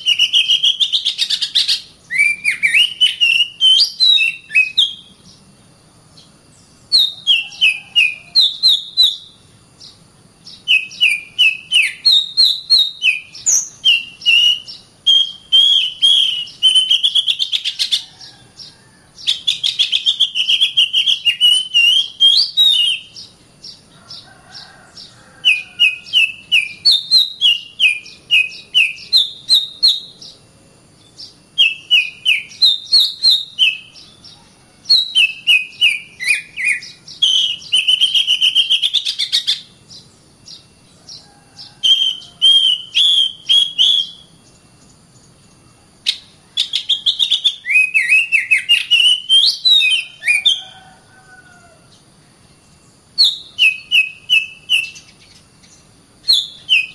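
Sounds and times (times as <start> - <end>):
bird singing whistled notes: 0.0 - 5.5, 6.1 - 30.4, 31.0 - 51.4, 52.5 - 56.9.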